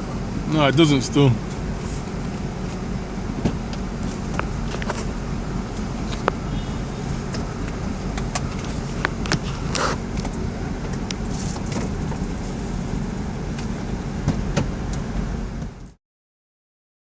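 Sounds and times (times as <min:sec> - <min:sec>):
car engine running: 0:00.0 - 0:16.0
sharp engine clicks: 0:03.7 - 0:12.4.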